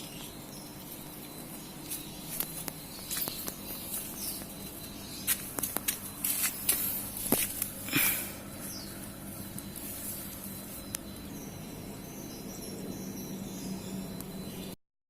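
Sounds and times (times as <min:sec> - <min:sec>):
leaves and twigs crackling: 0:00.8 - 0:08.3.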